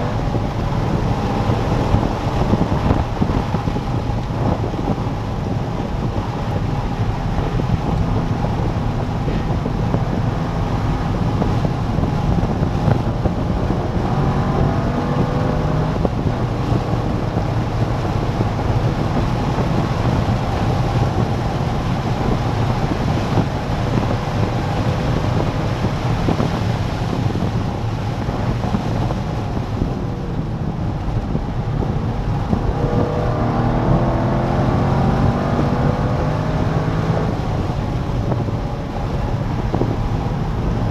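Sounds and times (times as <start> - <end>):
car engine accelerating: 0.0 - 40.9
wind rush: 0.0 - 40.9.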